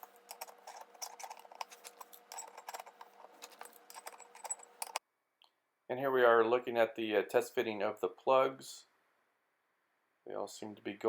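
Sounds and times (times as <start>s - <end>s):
hand tools clinking on metal: 0.0s - 5.0s.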